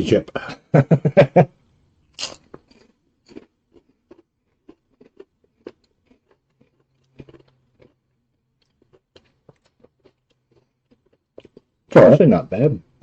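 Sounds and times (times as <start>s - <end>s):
potato chips being chewed: 2.2s - 11.9s.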